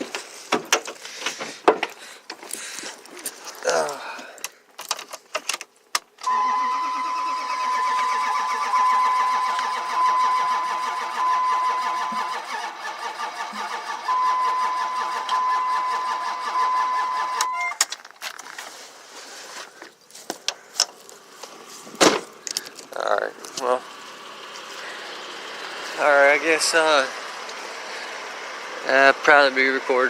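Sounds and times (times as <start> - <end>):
engine cranking on starter: 6.2 - 17.8.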